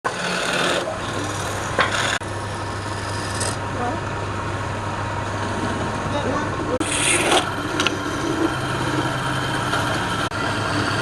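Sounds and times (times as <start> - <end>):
tool scraping spinning wood: 0.1 - 3.6, 6.6 - 11.0
wood lathe humming: 0.1 - 3.8, 6.7 - 11.0.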